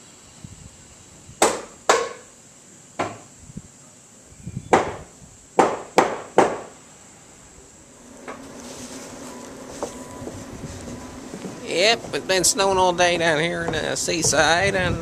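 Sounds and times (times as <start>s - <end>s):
hammer striking wood: 1.4s - 2.3s, 3.0s - 3.2s, 4.7s - 5.0s, 5.6s - 6.8s.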